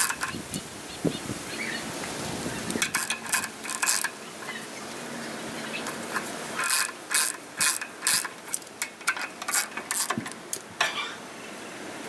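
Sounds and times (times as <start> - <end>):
ratchet wrench clicking: 0.0 - 0.6, 2.6 - 4.2, 5.8 - 10.7.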